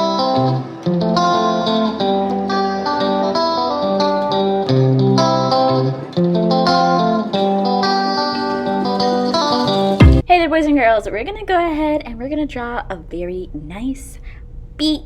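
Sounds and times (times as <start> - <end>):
plucked guitar melody: 0.0 - 10.2.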